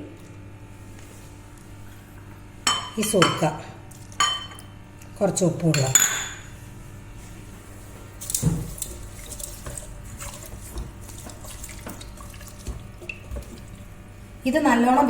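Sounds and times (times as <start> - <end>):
water sloshing in a pot: 7.2 - 15.0.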